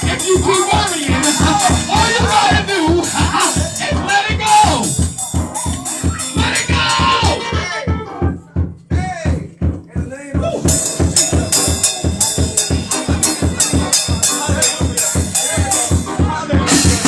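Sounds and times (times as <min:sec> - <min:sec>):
high rattle: 0:00.0 - 0:07.5, 0:10.7 - 0:16.1
even drum beat: 0:00.0 - 0:17.0
fast praise music: 0:00.0 - 0:17.0.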